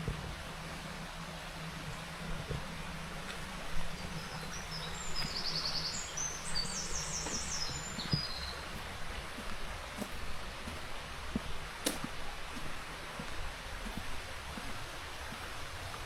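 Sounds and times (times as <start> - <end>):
low background hum: 0.0 - 16.0
faint knocks: 1.8 - 3.9, 7.2 - 15.4
songbird trilling: 4.0 - 8.8.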